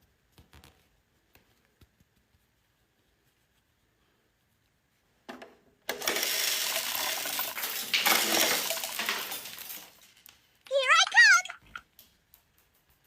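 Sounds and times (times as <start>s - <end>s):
small hard objects rattling: 5.9s - 11.8s.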